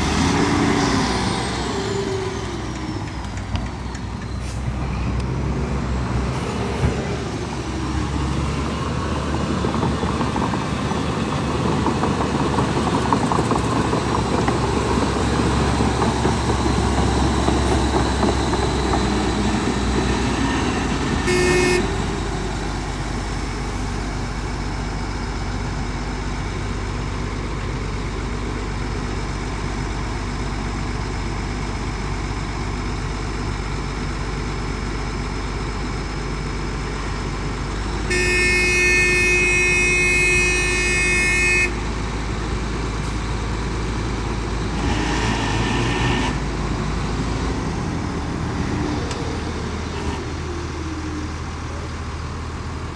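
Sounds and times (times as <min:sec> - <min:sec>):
diesel machinery engine running: 0:00.0 - 0:52.9
short horn toot: 0:21.2 - 0:22.0, 0:38.1 - 0:41.8.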